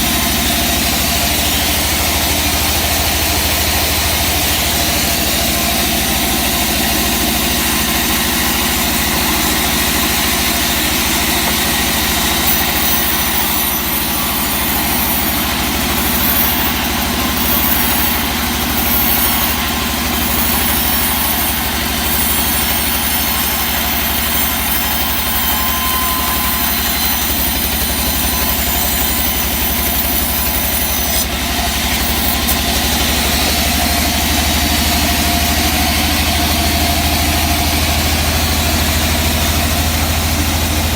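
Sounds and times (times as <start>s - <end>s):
sawmill engine drone: 0.0s - 40.9s.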